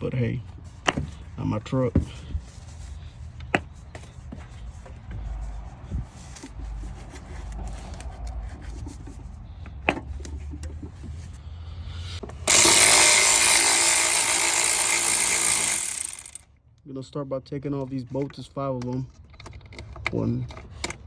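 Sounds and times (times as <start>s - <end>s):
handheld power tool running: 12.4s - 16.4s.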